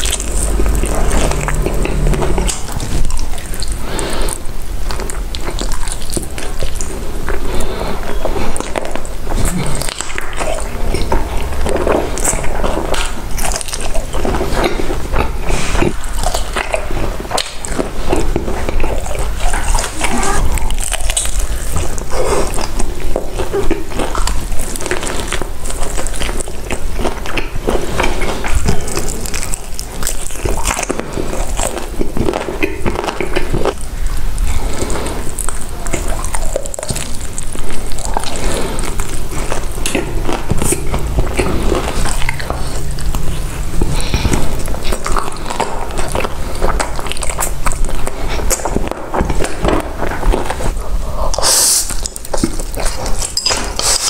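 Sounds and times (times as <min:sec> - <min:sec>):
wet chewing and biting: 0:00.0 - 0:54.0.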